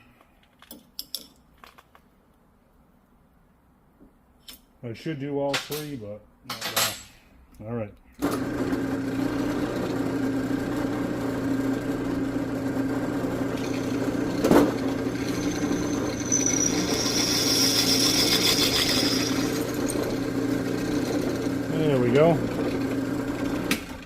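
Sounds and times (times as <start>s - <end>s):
electric drill motor running: 8.2s - 24.0s
drill bit squealing on metal: 14.9s - 20.0s.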